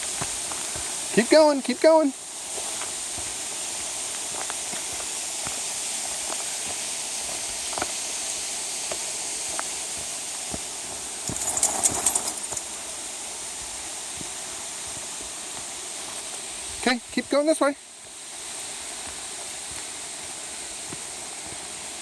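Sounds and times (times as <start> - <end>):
footsteps on rough trail: 0.0 - 1.4, 2.4 - 13.0, 18.9 - 21.8
steady hiss: 0.0 - 22.0.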